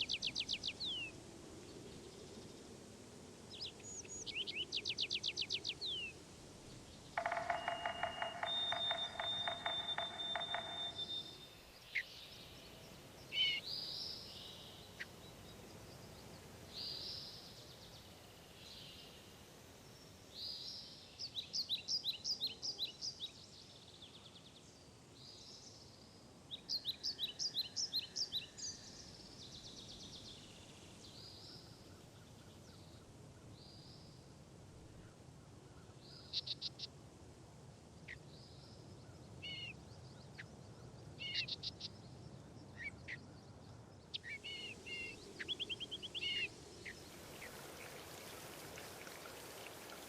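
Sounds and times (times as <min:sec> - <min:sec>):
bird quick repeated notes: 0:07.2 - 0:11.4
birds chirping and whistling: 0:07.2 - 0:11.6.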